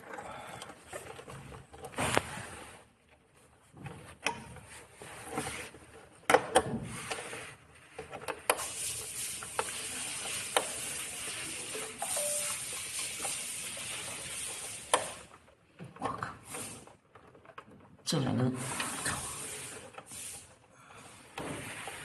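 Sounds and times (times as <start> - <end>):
steady hiss: 8.5 - 15.3, 18.6 - 22.0.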